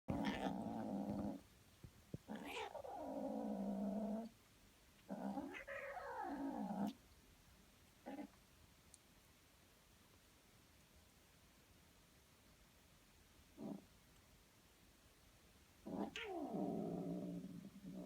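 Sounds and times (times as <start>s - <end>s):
cat yowling: 2.3s - 3.0s.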